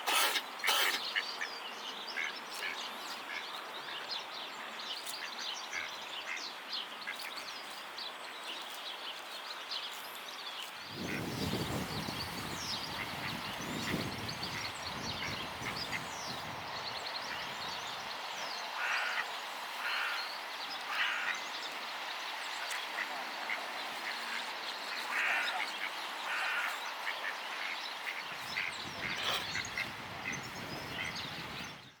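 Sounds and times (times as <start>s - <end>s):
swan rough cough-like calls: 0.0s - 1.2s, 29.0s - 29.9s.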